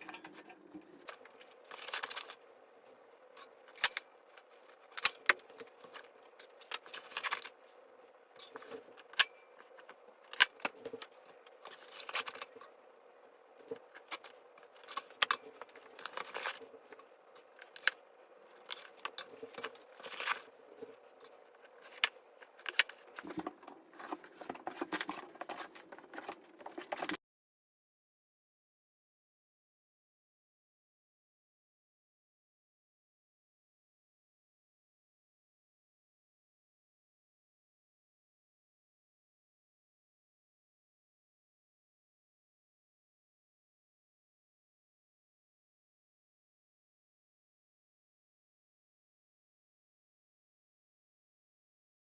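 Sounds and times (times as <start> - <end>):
packaging rustling: 1.0 - 2.4.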